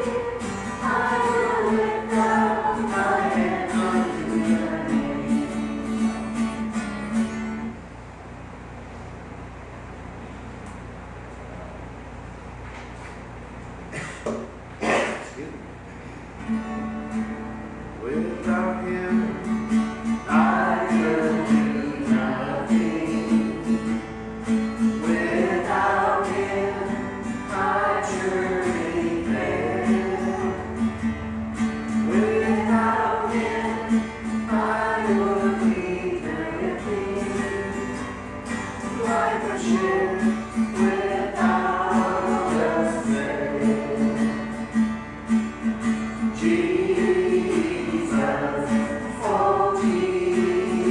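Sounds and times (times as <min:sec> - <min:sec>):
person singing worship song: 0:00.0 - 0:06.0, 0:18.0 - 0:24.0, 0:24.8 - 0:44.5, 0:46.4 - 0:50.9
acoustic guitar: 0:00.0 - 0:09.5, 0:12.5 - 0:50.9.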